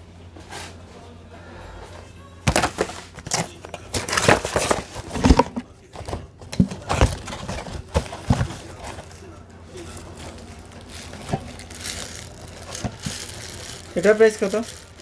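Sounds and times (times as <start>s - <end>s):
knocks and clatter of handling: 2.5s - 9.2s
crinkling rustles: 2.5s - 15.0s.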